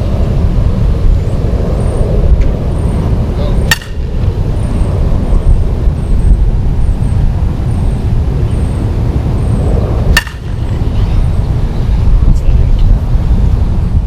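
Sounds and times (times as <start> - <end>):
wind rumble on microphone: 0.0 - 14.0
bat hitting softball: 3.6 - 4.2, 10.1 - 10.9.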